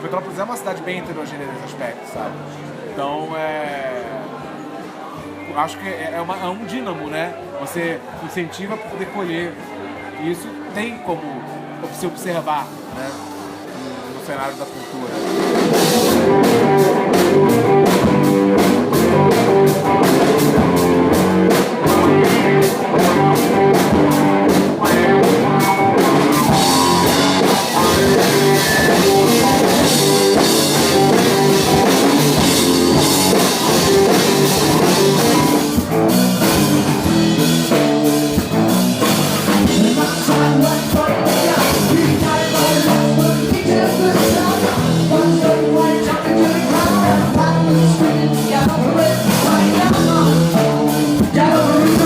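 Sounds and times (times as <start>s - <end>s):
rock music with guitar and drums: 12.7s - 52.0s.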